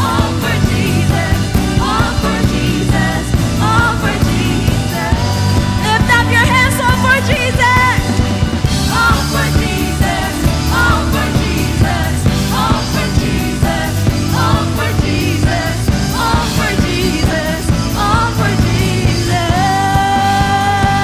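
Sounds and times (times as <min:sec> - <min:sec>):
rock band with drums and bass: 0:00.0 - 0:21.0
person singing: 0:08.8 - 0:21.0.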